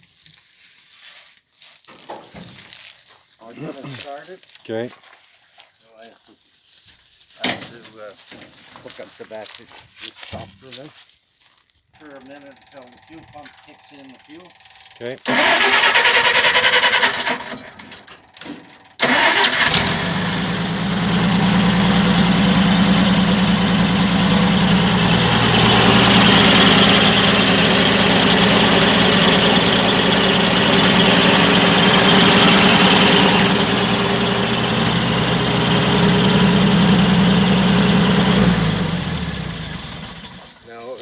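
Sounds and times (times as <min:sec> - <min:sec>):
engine starting and running: 0:15.3 - 0:40.6.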